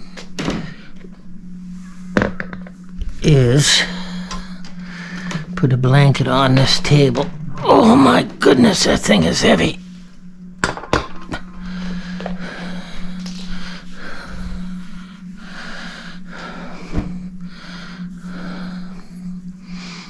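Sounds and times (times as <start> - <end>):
low hum: 0.0 - 20.0
man breathing hard: 3.8 - 5.6, 11.4 - 20.0.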